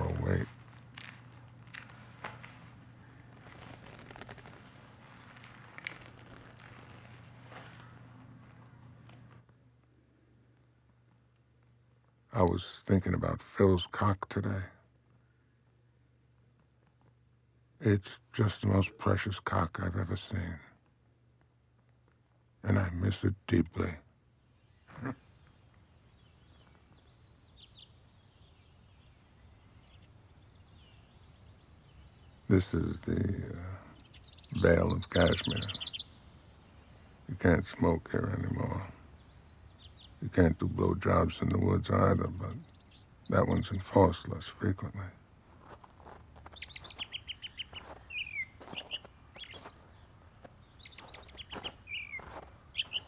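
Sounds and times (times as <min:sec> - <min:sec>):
songbird singing: 0:00.0 - 0:09.4, 0:22.6 - 0:53.0
high bird chirps: 0:33.9 - 0:37.3, 0:42.4 - 0:43.7, 0:45.8 - 0:53.0.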